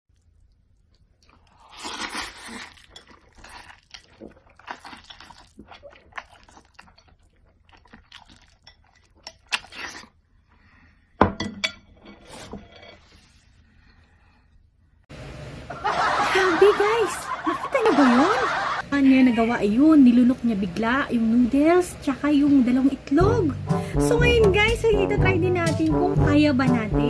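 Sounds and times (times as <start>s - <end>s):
person slurping and chewing: 0.2s - 10.7s.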